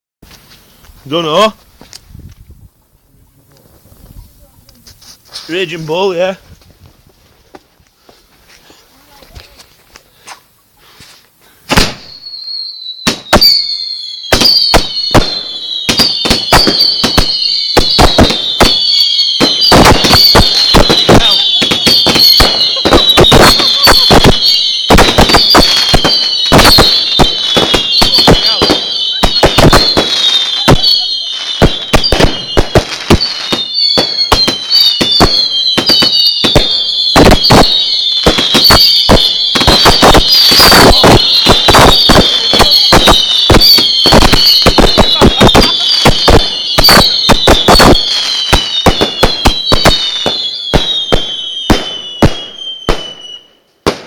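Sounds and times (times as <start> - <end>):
firework bangs: 11.6 - 54.0
firework whistles falling in pitch: 11.7 - 54.0.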